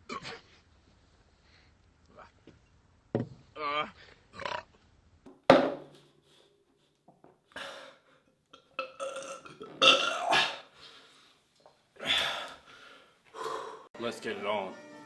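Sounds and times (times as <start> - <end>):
man belching loudly: 8.8 - 10.6.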